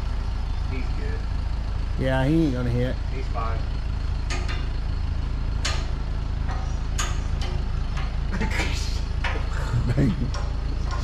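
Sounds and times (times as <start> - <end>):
truck engine idling: 0.0 - 11.0
sharp clicks and knocks: 4.2 - 4.7, 5.6 - 9.5, 10.2 - 11.0.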